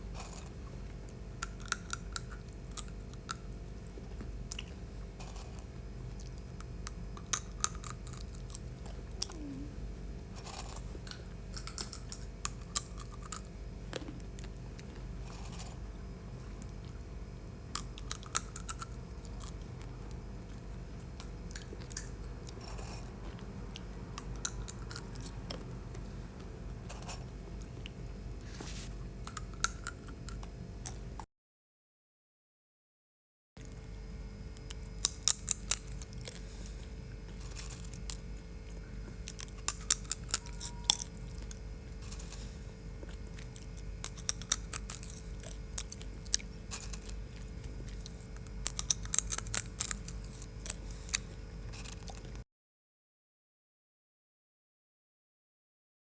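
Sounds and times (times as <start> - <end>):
steady low hum: 0.0 - 31.3, 33.6 - 52.4
seeds cracking between teeth: 39.1 - 52.4.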